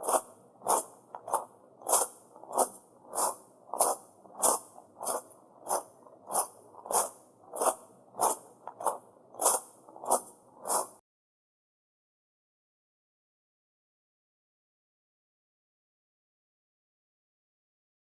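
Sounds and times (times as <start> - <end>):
footsteps on gravel: 0.0 - 11.0.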